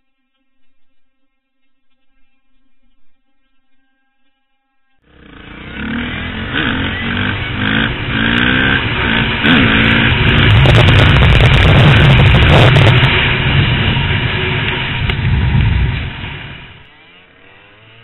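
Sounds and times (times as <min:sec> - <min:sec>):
dirt bike engine revving: 0:05.0 - 0:18.0.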